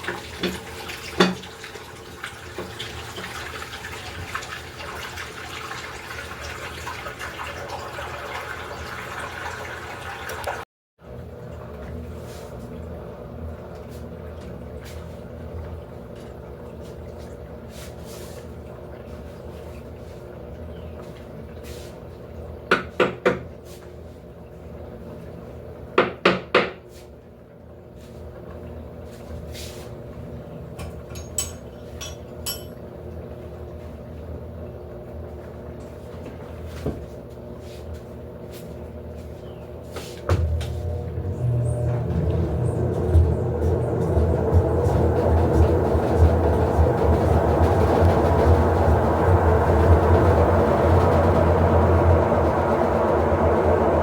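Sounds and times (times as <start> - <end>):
washing machine motor hum: 0.0 - 54.0
sharp knocks or clinks: 31.1 - 32.8.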